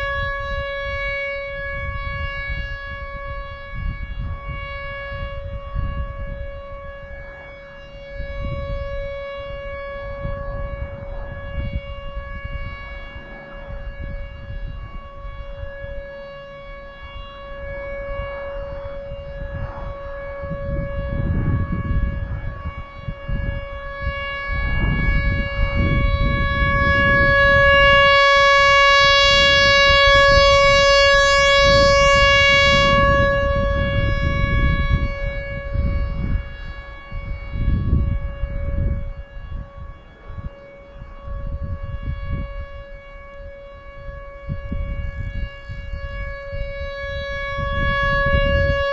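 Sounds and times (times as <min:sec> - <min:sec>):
rotating warning siren steady tone: 0:00.0 - 0:48.9.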